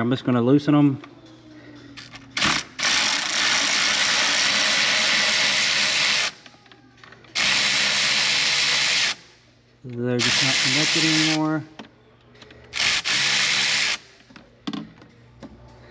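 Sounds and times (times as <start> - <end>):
power tool spinning a socket: 7.4 - 9.2, 10.2 - 11.4, 12.7 - 14.0.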